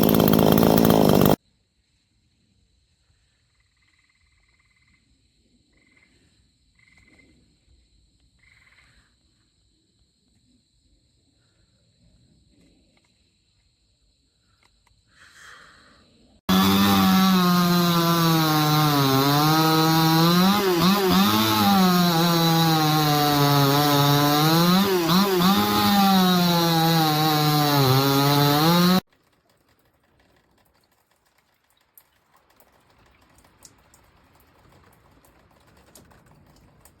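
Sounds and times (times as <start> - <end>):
chainsaw engine at high revs: 0.0 - 1.4, 16.5 - 29.1
small clicks: 29.1 - 37.0.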